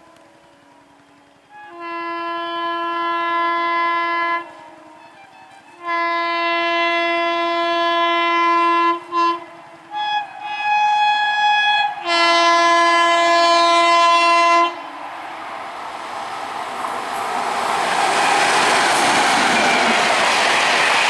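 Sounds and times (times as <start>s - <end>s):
electric train horn blasts: 0.0s - 15.2s
train wheels clattering on rails: 15.4s - 21.0s.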